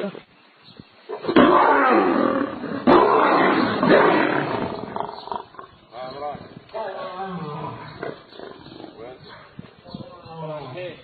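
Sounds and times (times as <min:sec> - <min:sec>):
lion roaring: 0:01.2 - 0:05.7.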